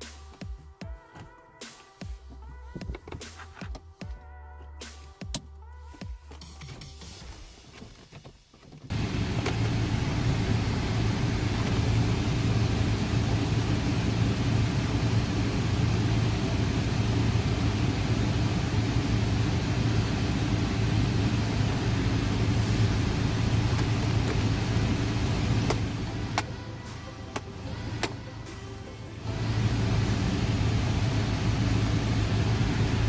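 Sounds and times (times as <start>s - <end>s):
car engine low drone: 8.9s - 33.0s.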